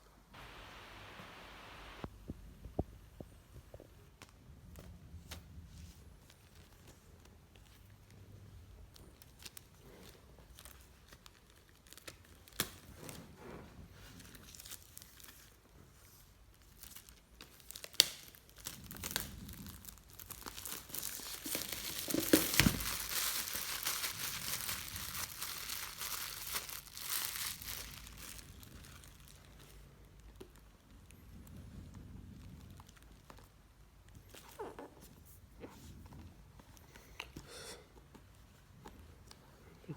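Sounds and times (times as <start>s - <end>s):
plastic wrap crinkling and tearing: 5.2s - 13.3s, 13.9s - 31.0s.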